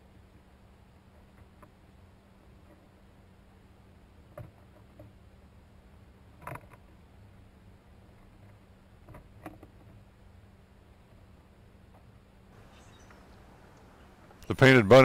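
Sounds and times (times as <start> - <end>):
low steady hum: 0.0 - 15.0
faint clicks and knocks: 4.3 - 5.2, 6.4 - 7.0, 8.1 - 10.0, 11.9 - 14.5.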